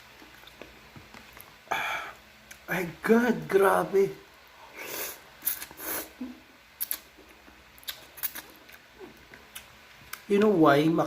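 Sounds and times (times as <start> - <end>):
mouth and utensil clicks: 6.8 - 7.1.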